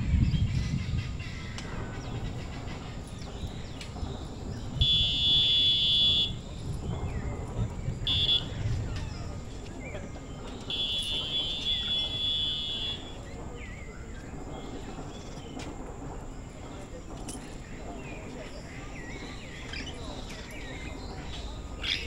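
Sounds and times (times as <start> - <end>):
high-pitched buzzing call: 4.8 - 6.4.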